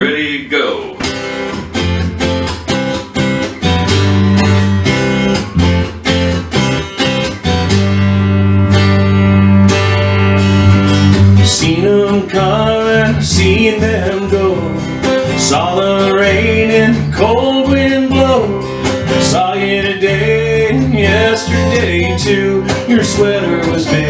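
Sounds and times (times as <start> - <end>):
acoustic guitar strumming: 0.0 - 24.0
person singing: 11.4 - 24.0.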